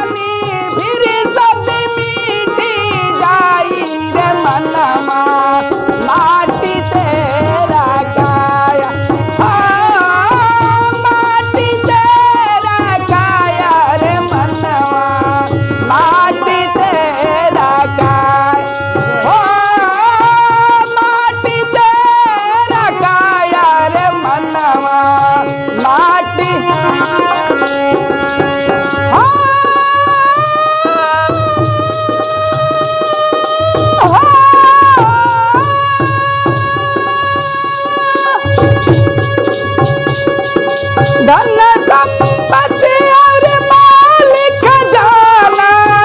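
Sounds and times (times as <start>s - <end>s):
steady percussion beat: 0.0s - 16.3s, 17.5s - 46.0s
melody with sliding bending notes: 38.4s - 43.7s.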